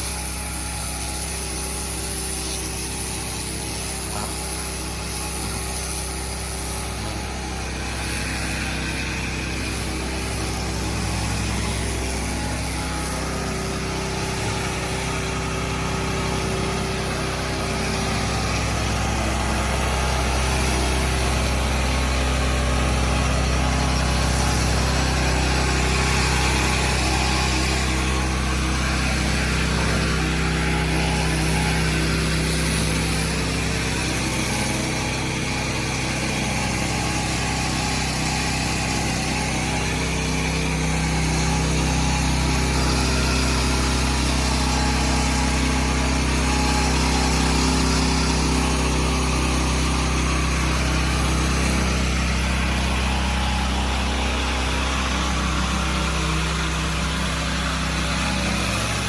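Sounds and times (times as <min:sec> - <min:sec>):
pressure washer engine running: 0:00.0 - 0:59.0
water jet hissing on stone: 0:00.0 - 0:59.0.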